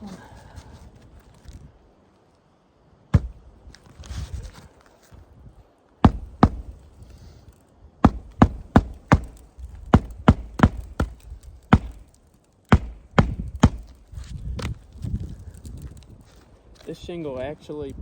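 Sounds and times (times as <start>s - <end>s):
hammer striking roofing nails: 3.2s - 3.4s, 6.0s - 6.9s, 8.0s - 14.0s.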